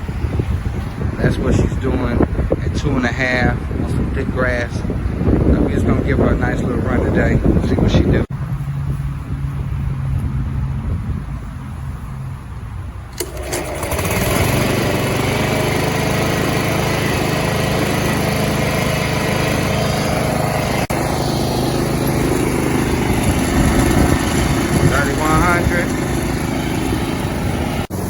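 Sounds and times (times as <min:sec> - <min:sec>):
lawn mower engine running: 0:13.1 - 0:28.0.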